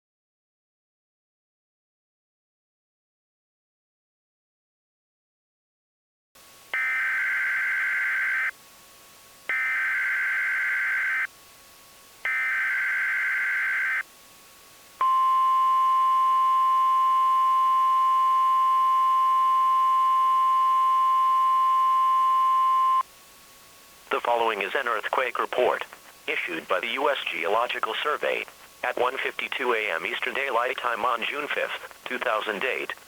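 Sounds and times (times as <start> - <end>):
steady attention tone: 15.0 - 23.0.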